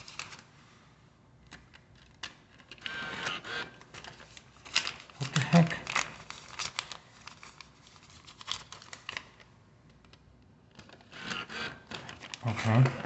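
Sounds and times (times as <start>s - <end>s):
paper bill crinkling: 0.0s - 0.5s, 3.7s - 11.1s.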